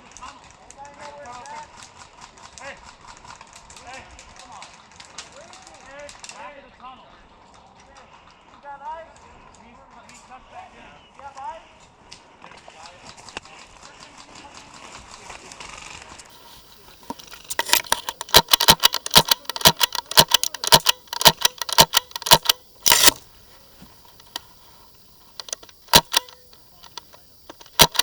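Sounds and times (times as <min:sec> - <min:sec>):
airsoft gunfire: 0:16.4 - 0:28.0.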